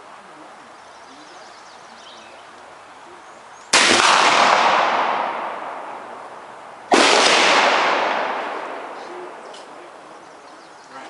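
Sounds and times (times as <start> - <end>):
gunshots with echo: 3.7 - 6.3, 6.9 - 10.1.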